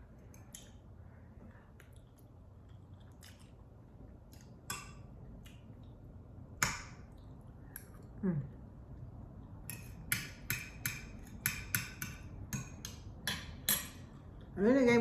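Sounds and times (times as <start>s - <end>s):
person eating food crackles: 0.1s - 6.1s.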